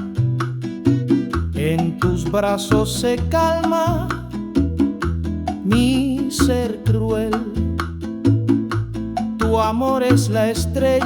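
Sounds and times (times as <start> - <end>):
latin band with hand percussion: 0.0 - 11.0
person singing: 1.6 - 4.4, 5.6 - 7.8, 9.4 - 11.0.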